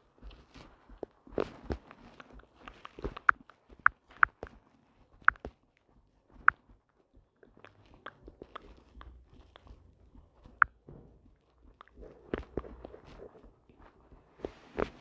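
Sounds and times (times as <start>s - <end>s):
sharp clicks and taps: 0.9s - 4.6s, 5.2s - 5.6s, 6.3s - 14.0s.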